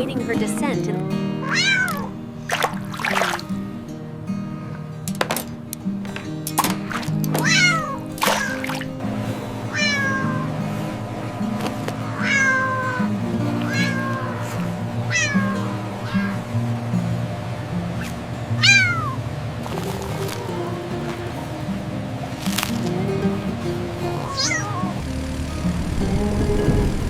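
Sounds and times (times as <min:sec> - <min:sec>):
cat meowing: 0:01.4 - 0:02.1, 0:07.4 - 0:08.6, 0:09.7 - 0:10.5, 0:12.1 - 0:16.4, 0:18.6 - 0:21.7, 0:22.5 - 0:25.0.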